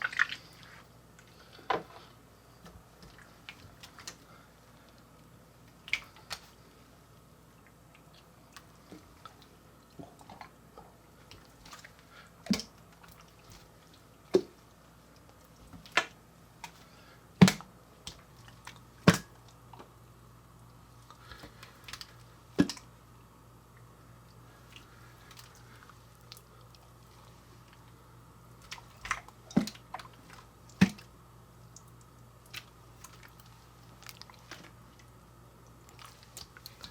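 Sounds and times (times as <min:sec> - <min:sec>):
slime popping and squelching: 0:17.4 - 0:19.4.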